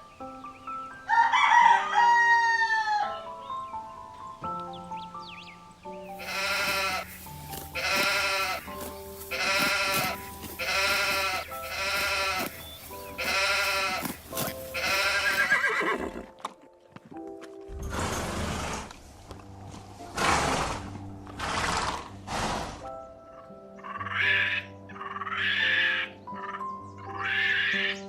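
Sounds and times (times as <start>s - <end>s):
background music: 0.0s - 28.0s
goat bleating: 6.2s - 12.6s, 13.2s - 16.2s.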